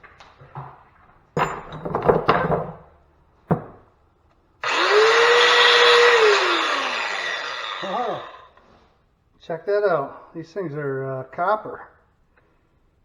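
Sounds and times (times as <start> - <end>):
power tool whining: 4.6 - 8.6.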